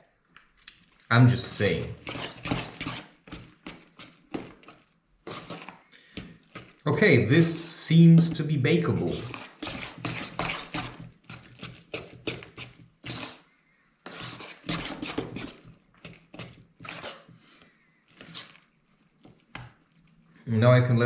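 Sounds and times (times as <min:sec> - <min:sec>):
utensils scraping cookware: 0:01.6 - 0:03.4, 0:05.3 - 0:05.8, 0:09.0 - 0:13.4, 0:14.1 - 0:17.3.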